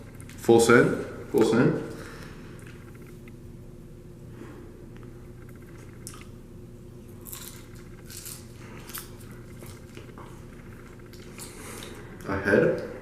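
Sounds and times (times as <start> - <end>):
steady low hum: 0.0 - 13.0
person chewing crunchy food: 5.6 - 6.4, 7.0 - 12.2.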